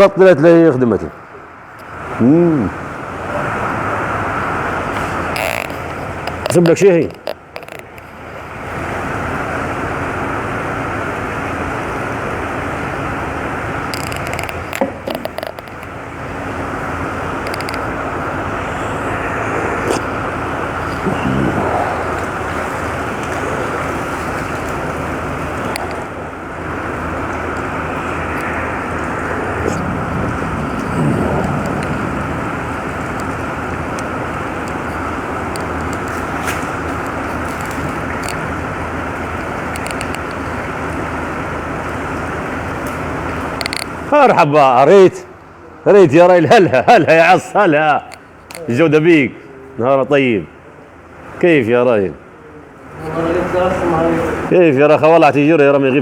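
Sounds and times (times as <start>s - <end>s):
road and water noise: 0.0s - 56.0s
traffic noise: 0.0s - 56.0s
low engine hum: 1.2s - 44.4s
clicks: 5.0s - 8.1s, 13.9s - 16.0s, 17.3s - 20.2s, 25.6s - 26.2s, 39.5s - 40.6s, 43.6s - 44.0s.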